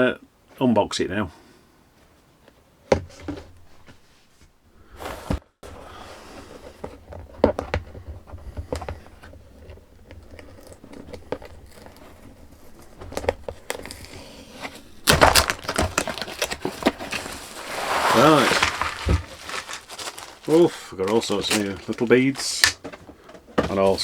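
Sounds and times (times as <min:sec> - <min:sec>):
packaging rustling and crinkling: 0:05.2 - 0:24.0.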